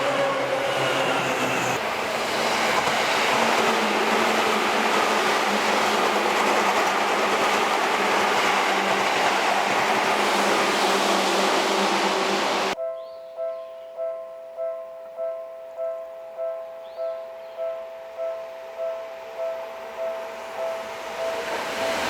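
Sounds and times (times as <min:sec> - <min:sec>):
train wheel and rail noise: 0:00.0 - 0:12.8, 0:17.7 - 0:22.0.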